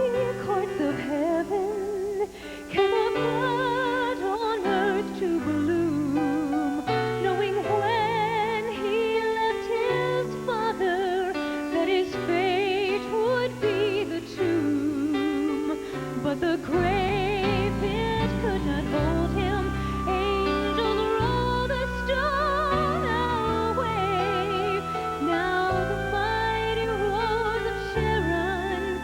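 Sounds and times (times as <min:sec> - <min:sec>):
held bass notes: 0:16.7 - 0:29.0
vibrato melody: 0:16.8 - 0:29.0.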